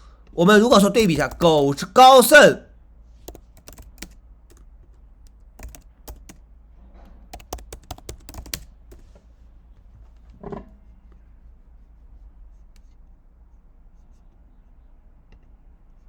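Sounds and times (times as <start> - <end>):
typing on computer keyboard: 3.3 - 4.7, 5.6 - 6.4, 7.3 - 9.0.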